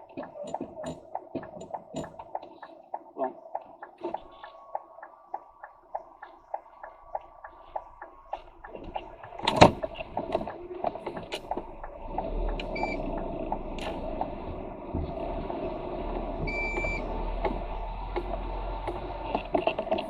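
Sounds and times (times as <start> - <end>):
rattles and clicks: 0.0 - 20.0
lorry engine and road rumble: 5.9 - 20.0
short electronic beeps: 12.7 - 13.0, 16.4 - 17.2.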